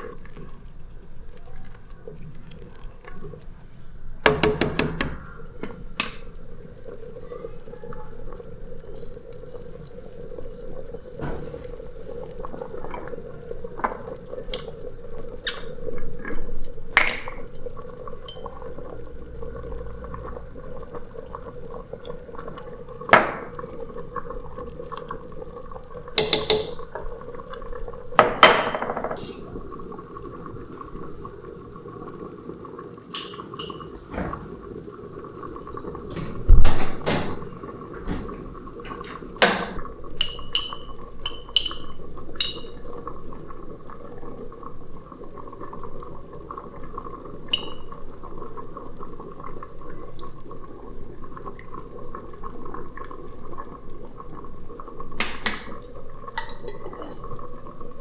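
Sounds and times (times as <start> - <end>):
pots and dishes clinking: 4.2 - 6.4, 11.2 - 13.2, 13.8 - 18.8, 23.1 - 23.7, 26.1 - 27.2, 28.2 - 29.6, 33.1 - 43.0, 47.5 - 48.0, 55.2 - 57.5.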